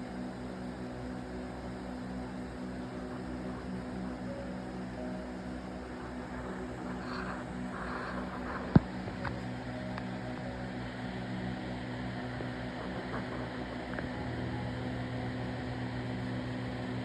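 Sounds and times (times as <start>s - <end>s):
low machine hum: 0.0s - 17.0s
faint ticks: 5.4s - 15.2s.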